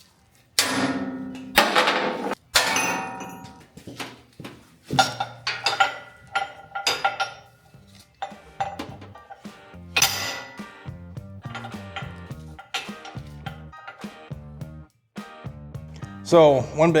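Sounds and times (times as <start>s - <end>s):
metal clanking: 0.6s - 4.2s, 4.8s - 14.4s.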